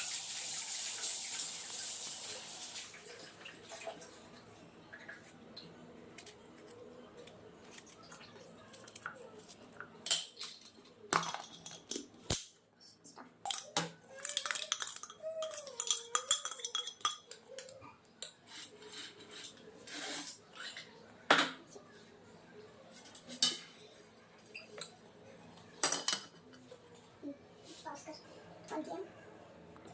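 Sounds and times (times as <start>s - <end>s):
dishes and cutlery clattering: 9.8s - 12.5s, 13.4s - 21.6s, 23.0s - 25.0s, 25.8s - 26.7s.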